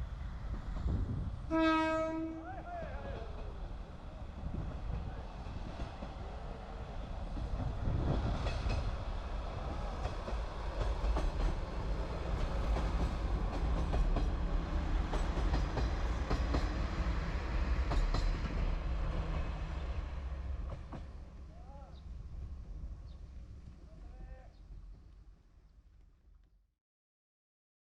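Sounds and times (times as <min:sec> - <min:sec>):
train wheels clacking on bridge: 0:03.0 - 0:21.3.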